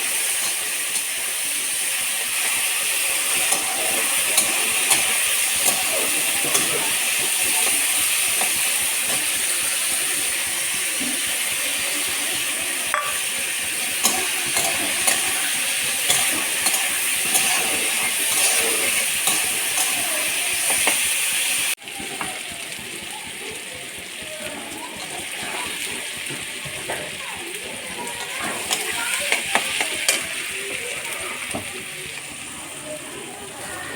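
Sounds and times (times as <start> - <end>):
vegetables sizzling in a pan: 0.0 - 33.9
spoon clicking against pan: 3.2 - 9.3, 13.9 - 21.1.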